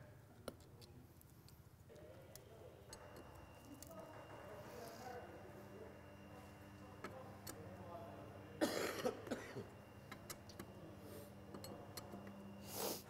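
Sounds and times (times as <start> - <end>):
man coughing: 8.6 - 9.7.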